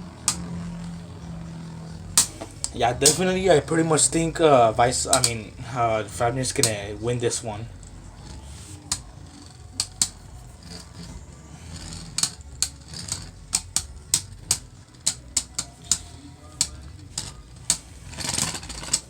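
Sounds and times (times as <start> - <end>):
spinning tops clacking: 0.0 - 19.0.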